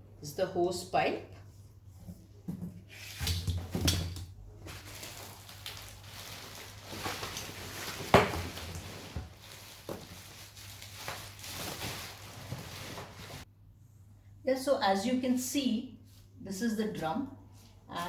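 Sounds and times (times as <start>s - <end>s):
plastic rustling: 4.7s - 13.5s.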